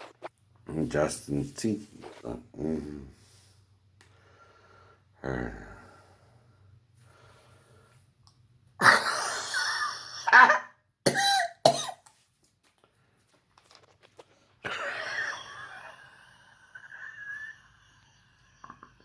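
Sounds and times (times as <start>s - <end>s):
man coughing: 8.8s - 12.0s.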